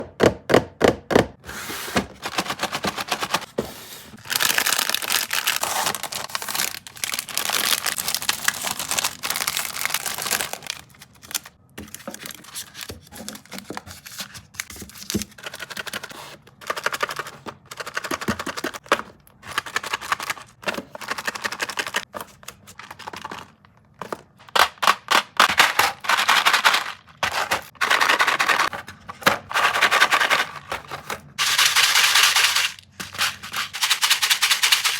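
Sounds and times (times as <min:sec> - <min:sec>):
packets clicking and tapping: 0:02.0 - 0:03.6, 0:04.2 - 0:34.9
plastic wrappers crinkling: 0:04.1 - 0:15.6, 0:29.8 - 0:34.9.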